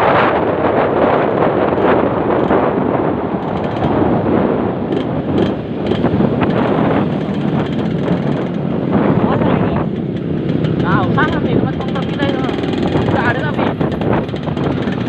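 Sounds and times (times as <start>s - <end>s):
wind on microphone: 0.0s - 15.0s
two-stroke motorcycle engine: 3.3s - 15.0s.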